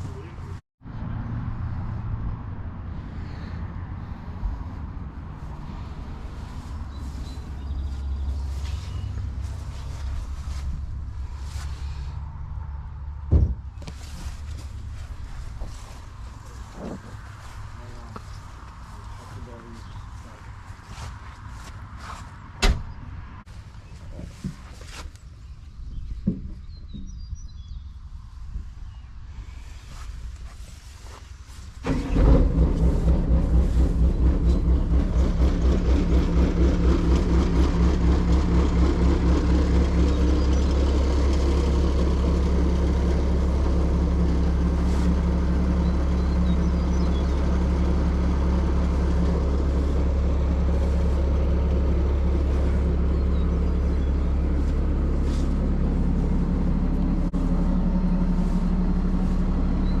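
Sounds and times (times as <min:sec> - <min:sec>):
engine starting and running: 0:31.5 - 1:00.0.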